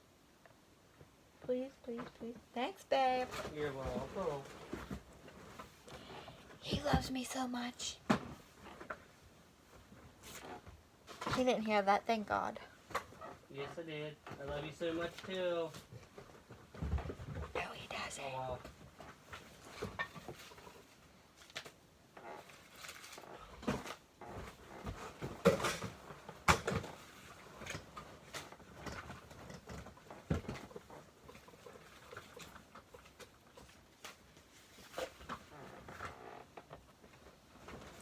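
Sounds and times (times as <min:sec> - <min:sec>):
household objects knocking and rustling: 0:03.1 - 0:07.4, 0:14.2 - 0:21.6, 0:22.4 - 0:38.0.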